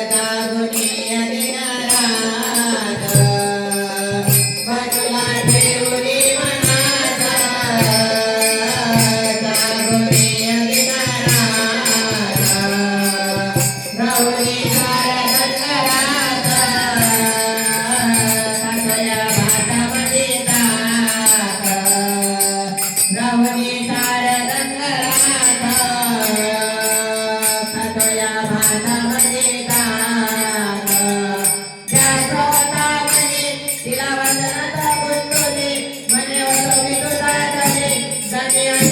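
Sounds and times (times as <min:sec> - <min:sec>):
devotional song: 0:00.0 - 0:38.9
steady percussion: 0:00.0 - 0:38.9.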